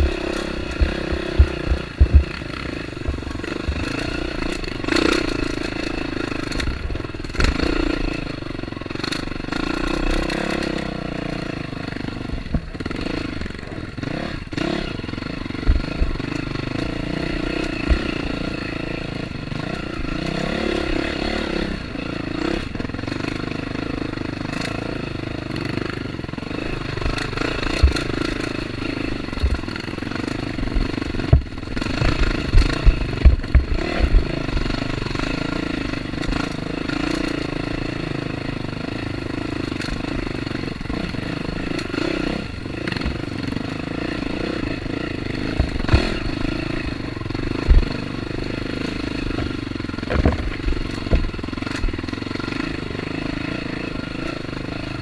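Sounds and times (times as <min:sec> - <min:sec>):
sharp knocks and clatter: 0:00.0 - 0:05.8, 0:06.4 - 0:07.9, 0:15.6 - 0:18.5, 0:27.0 - 0:35.3, 0:45.5 - 0:46.6, 0:47.4 - 0:48.0, 0:48.7 - 0:52.6
motorcycle engine revving: 0:00.0 - 0:55.0.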